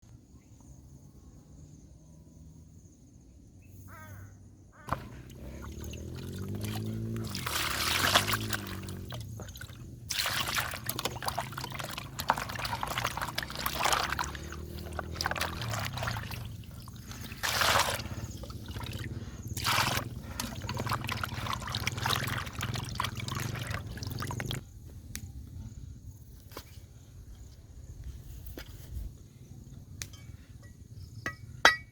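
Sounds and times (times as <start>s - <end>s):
water pouring and splashing: 4.9s - 24.6s.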